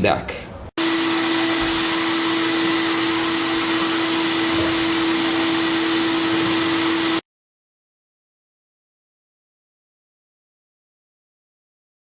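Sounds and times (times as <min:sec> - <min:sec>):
motor hum: 0:00.8 - 0:07.2.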